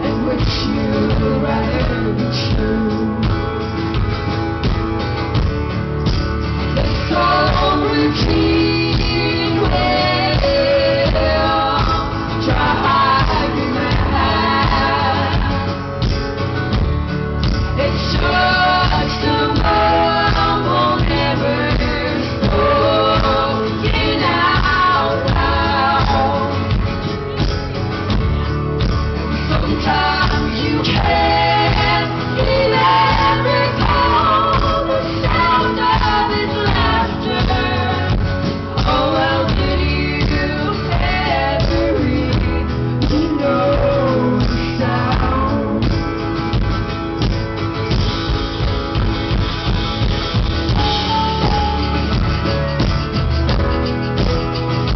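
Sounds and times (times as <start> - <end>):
women singing: 0.0 - 4.0, 6.6 - 16.4, 17.6 - 27.5, 29.3 - 46.7
guitar: 0.0 - 54.9
rhythm section: 0.1 - 54.9.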